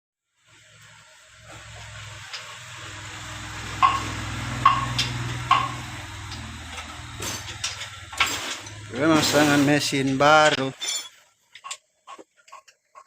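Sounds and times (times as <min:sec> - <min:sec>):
small engine humming: 0:01.3 - 0:09.6.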